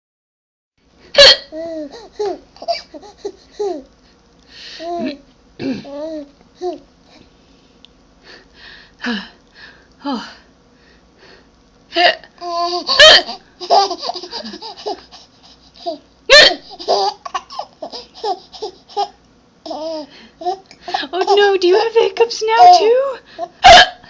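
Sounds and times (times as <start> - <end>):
baby laughing and babbling: 1.2 - 3.9, 4.8 - 6.9, 12.4 - 21.5
baby hiccupping: 12.0 - 15.0.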